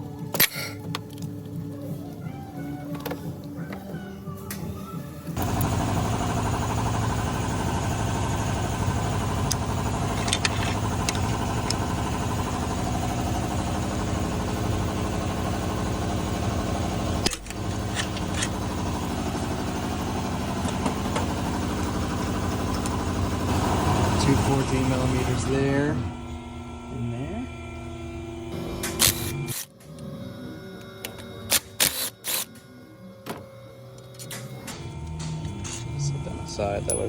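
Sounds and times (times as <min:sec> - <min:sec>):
low mechanical engine hum: 0:00.0 - 0:32.4.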